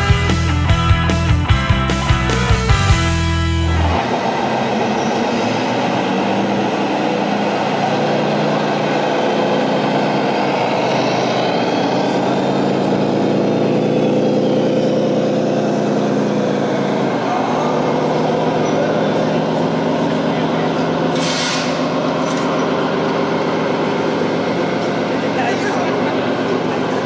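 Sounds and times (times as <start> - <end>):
model truck diesel engine sounds: 0.0 - 27.0.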